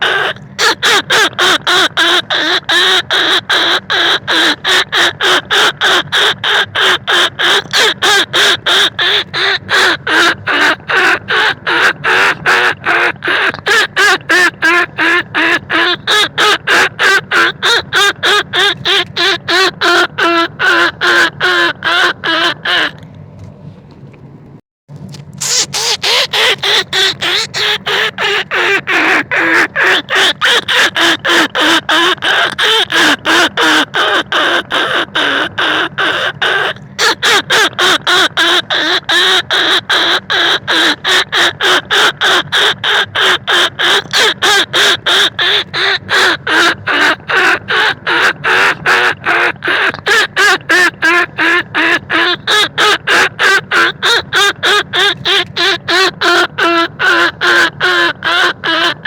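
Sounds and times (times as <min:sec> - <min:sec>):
rapid short pitched rat calls: 0:00.0 - 0:23.0, 0:25.1 - 0:59.0.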